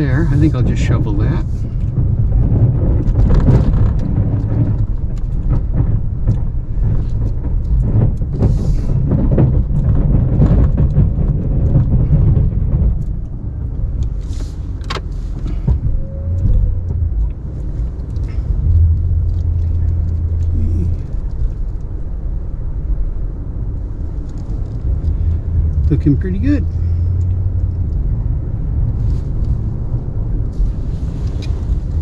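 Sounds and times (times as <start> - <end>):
pickup truck engine rumbling: 0.0 - 32.0
sharp scrapes and knocks: 14.1 - 15.9.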